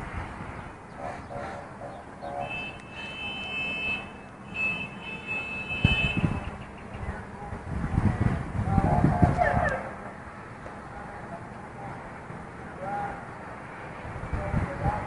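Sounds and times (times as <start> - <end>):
high-pitched electronic alarm tone: 2.2 - 6.2.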